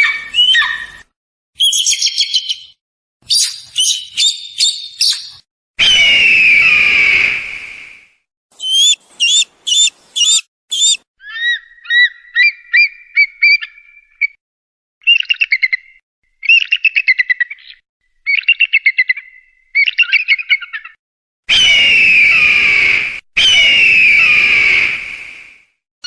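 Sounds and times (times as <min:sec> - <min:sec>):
eagle calling: 0:03.3 - 0:05.3, 0:08.6 - 0:14.2.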